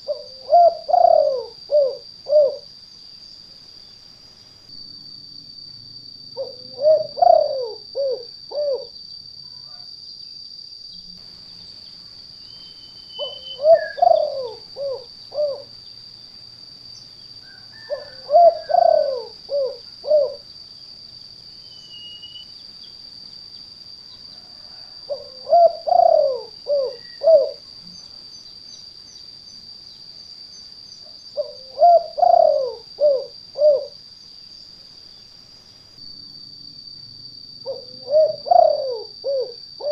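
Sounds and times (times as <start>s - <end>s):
dove cooing: 0.0s - 2.7s, 6.4s - 9.0s, 13.2s - 15.7s, 17.5s - 20.5s, 24.4s - 27.6s, 31.4s - 34.0s, 37.6s - 39.9s.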